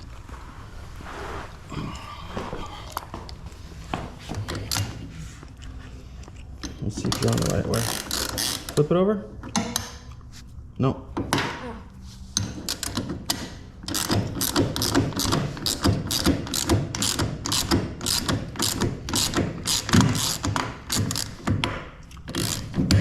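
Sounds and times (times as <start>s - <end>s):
socket ratchet clicking: 12.6s - 21.6s, 22.3s - 22.8s.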